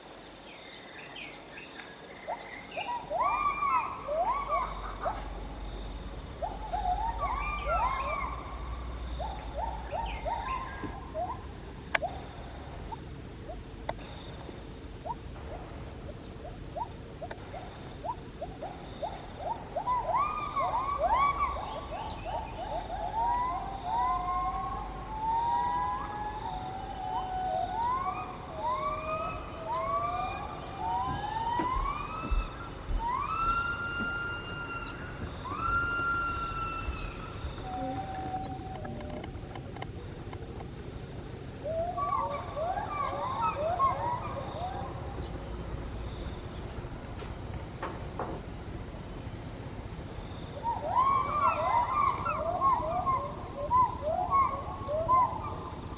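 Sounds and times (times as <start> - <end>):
high insect drone: 0.0 - 55.9
apes whooping: 19.5 - 39.4.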